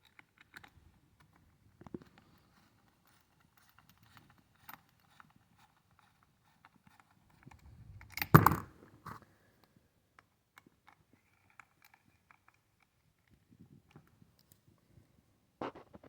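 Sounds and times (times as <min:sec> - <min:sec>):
knock or clatter: 0:08.2 - 0:08.7.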